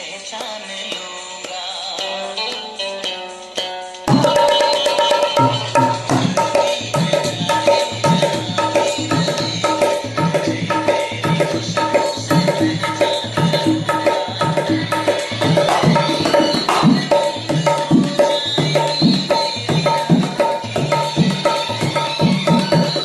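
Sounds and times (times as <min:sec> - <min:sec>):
dholak drumming: 0:00.3 - 0:23.0.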